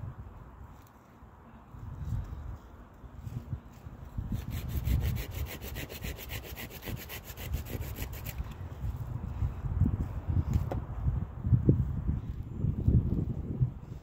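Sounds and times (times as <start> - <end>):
hand saw cutting wood: 4.4 - 8.4.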